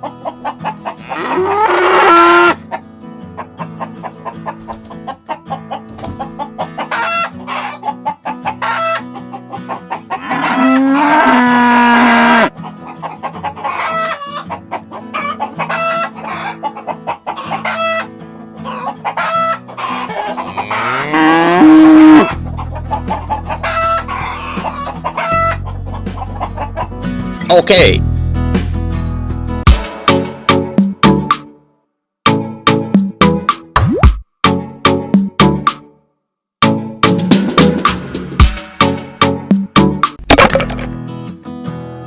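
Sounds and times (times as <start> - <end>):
chickens clucking: 0.0 - 11.3, 12.5 - 27.4
background music: 0.0 - 36.0, 36.6 - 42.0
long loud animal calls: 10.0 - 12.5, 19.8 - 22.3.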